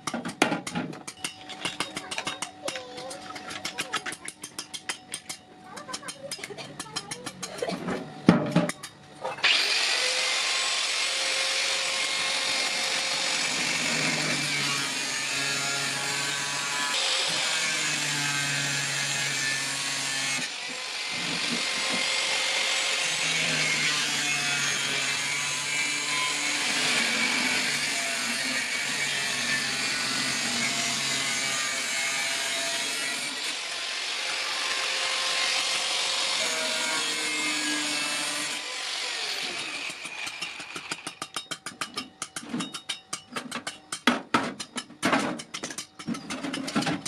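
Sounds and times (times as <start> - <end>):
power tool running: 9.4 - 41.0.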